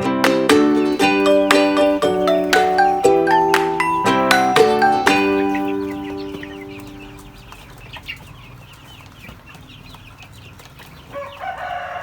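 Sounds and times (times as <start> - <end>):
chicks peeping: 0.3 - 12.0
chicken call: 0.5 - 7.7.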